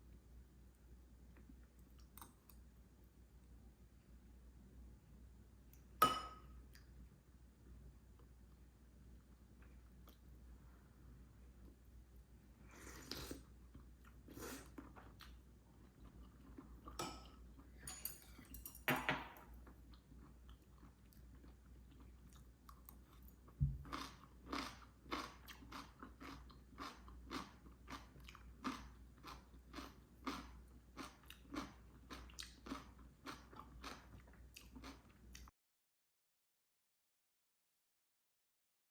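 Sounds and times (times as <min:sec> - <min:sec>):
person chewing crunchy food: 0:19.6 - 0:35.5.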